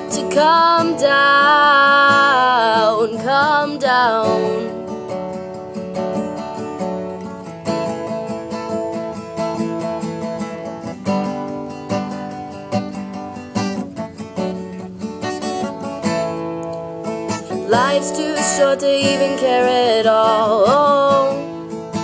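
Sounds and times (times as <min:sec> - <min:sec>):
acoustic guitar strumming chords: 0:00.0 - 0:22.0.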